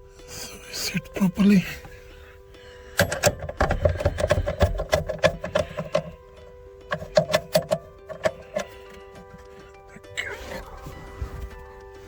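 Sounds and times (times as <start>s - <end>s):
ratchet clicking: 3.0s - 6.2s, 6.9s - 9.4s.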